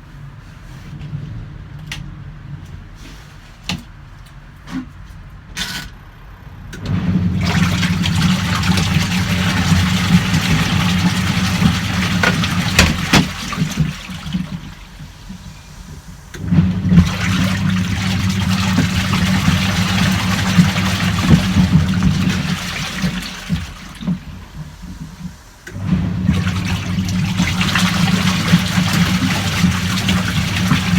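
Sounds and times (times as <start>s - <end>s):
washing machine motor hum: 0.0s - 30.9s
water and clothes churning: 6.8s - 30.9s.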